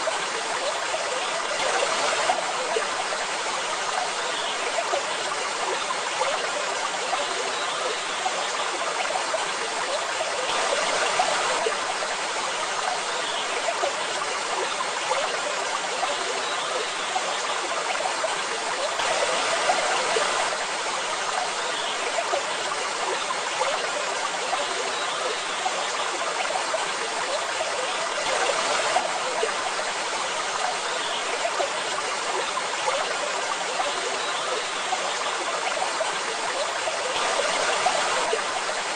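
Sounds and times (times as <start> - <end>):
waterfall splashing: 28.0 - 38.9.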